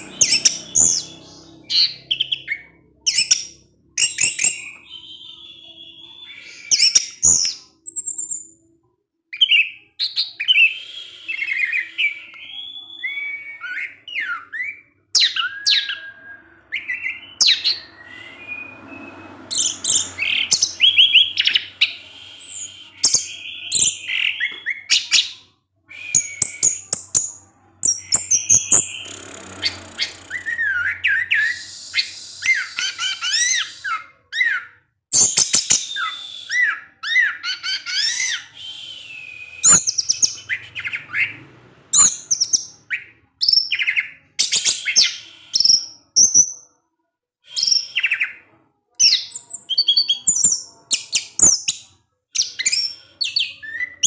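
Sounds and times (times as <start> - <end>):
thrush singing: 0.0 - 3.1.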